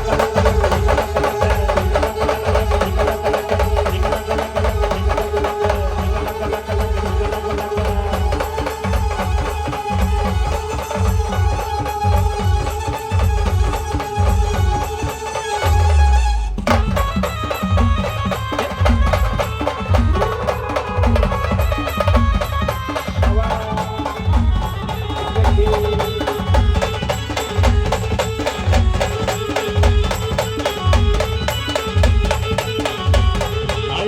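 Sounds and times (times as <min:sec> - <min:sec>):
driving drum beat: 0:00.0 - 0:34.0.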